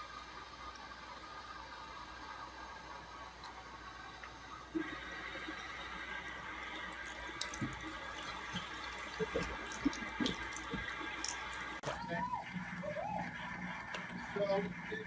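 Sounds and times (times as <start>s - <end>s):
tap water running into sink: 4.2s - 12.0s
water splashes and drips: 4.2s - 12.0s.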